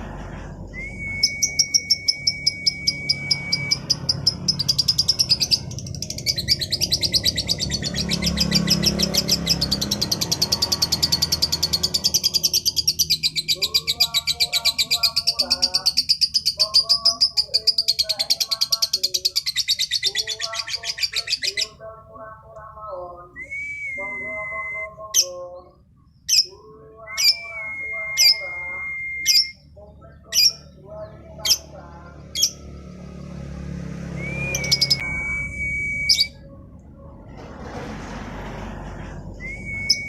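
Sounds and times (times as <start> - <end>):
lovebird singing: 0.7 - 32.9, 34.0 - 36.8
sharp high chirps: 0.9 - 8.6, 34.2 - 36.4
long whistled note: 34.2 - 36.2.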